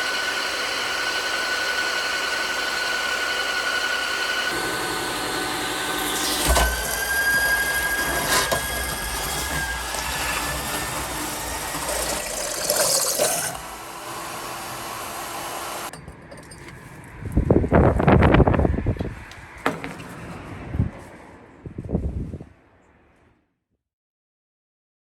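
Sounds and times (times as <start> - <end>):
core drill boring through wall: 0.0 - 16.0.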